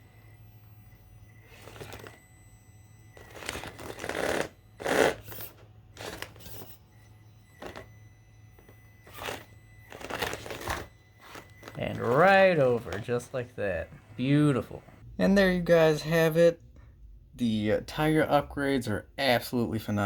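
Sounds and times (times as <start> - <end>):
faint steady hum: 0.0 - 20.0.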